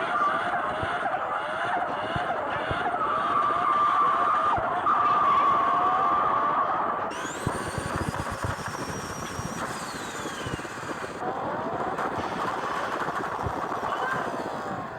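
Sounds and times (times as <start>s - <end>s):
engine revving: 7.1s - 11.2s
compressor surge flutter: 7.1s - 14.9s.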